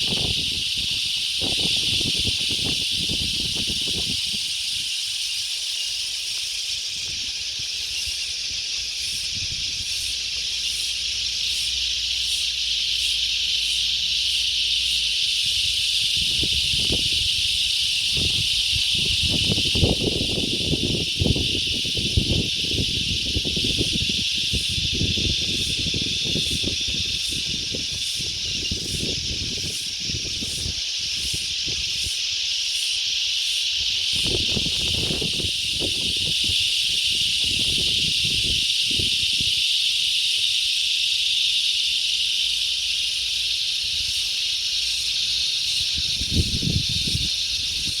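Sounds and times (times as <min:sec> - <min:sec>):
wind buffeting microphone: 0:00.0 - 0:05.0, 0:08.4 - 0:10.3, 0:15.4 - 0:32.2, 0:33.8 - 0:39.7, 0:45.7 - 0:48.0
high outdoor hiss: 0:00.0 - 0:48.0.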